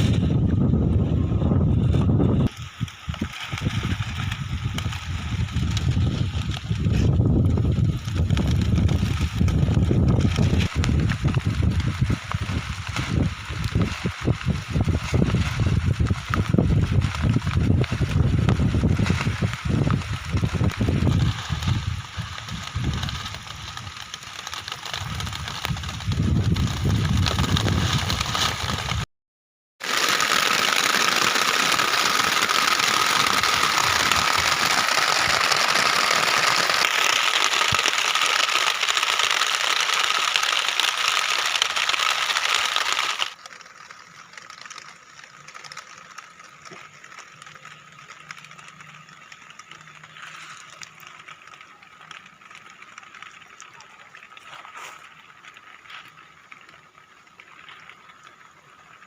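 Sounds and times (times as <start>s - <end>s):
low rumbling: 0.0s - 24.0s
heavy rain on a tent: 1.7s - 29.1s, 29.8s - 59.0s.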